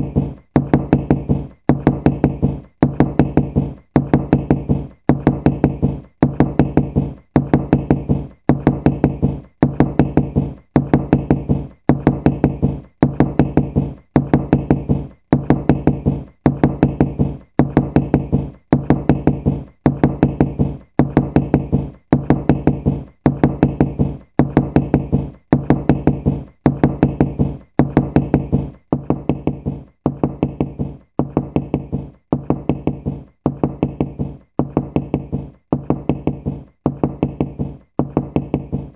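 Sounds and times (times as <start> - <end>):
low dull knocking: 0.0 - 38.9.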